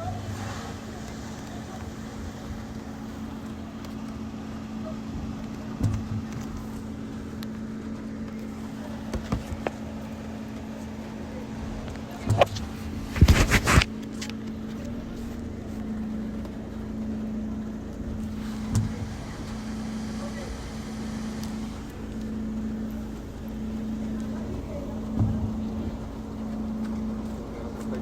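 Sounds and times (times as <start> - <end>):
steady low hum: 0.0 - 28.0
rain falling: 15.3 - 28.0.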